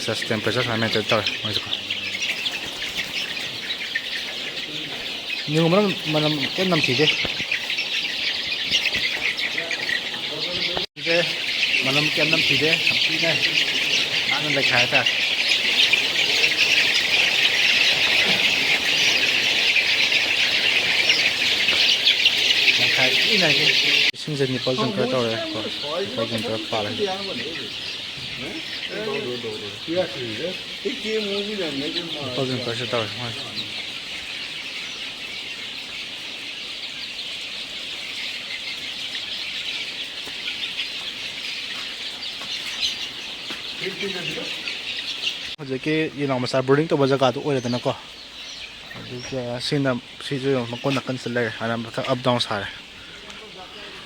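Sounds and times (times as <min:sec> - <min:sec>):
hens clucking and squawking: 0:00.0 - 0:54.0.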